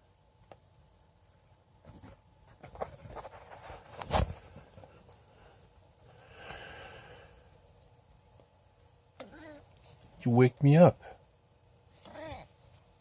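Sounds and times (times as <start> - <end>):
rustling and small knocks: 0.1 - 6.6.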